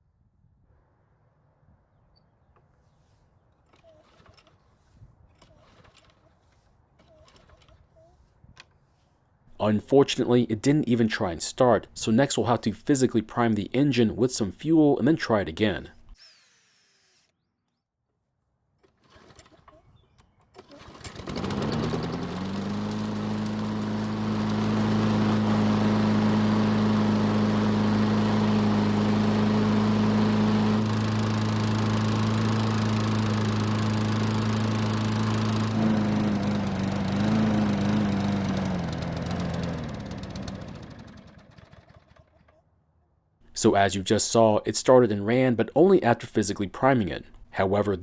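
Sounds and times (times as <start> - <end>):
lawn mower engine running: 20.6 - 42.6.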